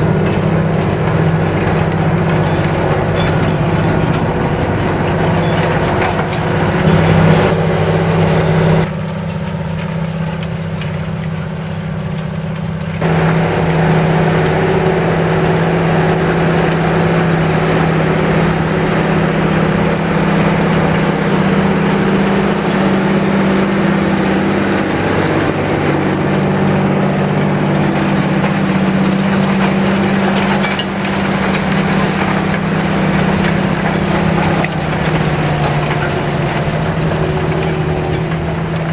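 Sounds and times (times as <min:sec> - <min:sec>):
tractor diesel engine under load: 0:00.0 - 0:38.9.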